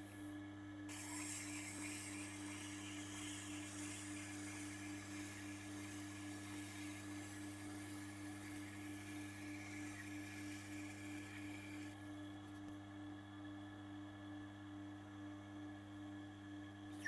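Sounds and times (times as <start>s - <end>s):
knife blade grinding hiss: 0.9s - 11.9s
sharpening machine motor humming: 0.9s - 12.0s.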